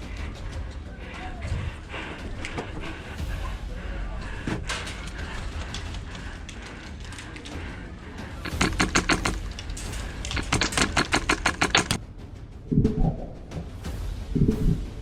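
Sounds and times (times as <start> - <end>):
airsoft guns firing: 8.4 - 12.0.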